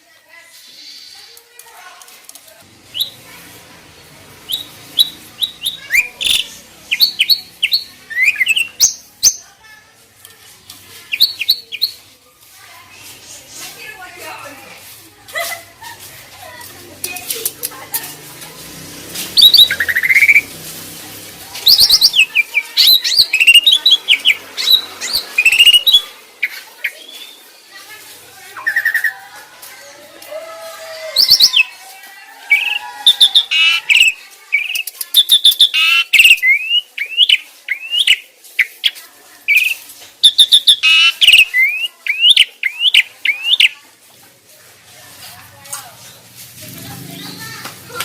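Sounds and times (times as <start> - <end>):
starling song: 10.9 - 44.2.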